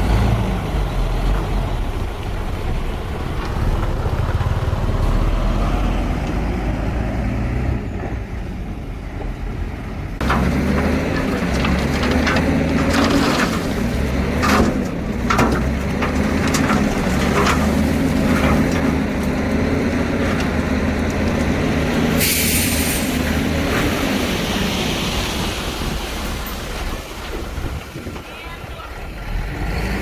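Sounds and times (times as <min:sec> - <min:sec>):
bulldozer diesel engine running: 0:00.0 - 0:25.5
metallic clanks from tracks: 0:10.2 - 0:23.2.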